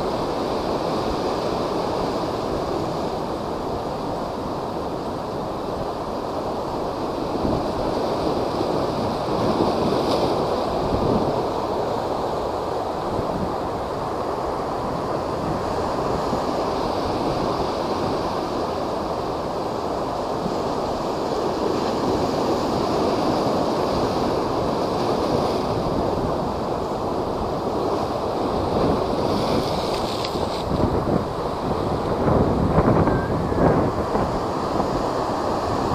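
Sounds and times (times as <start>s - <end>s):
rough surf: 0.0s - 35.9s
strong wind: 0.0s - 35.9s
wind buffeting microphone: 20.3s - 35.9s.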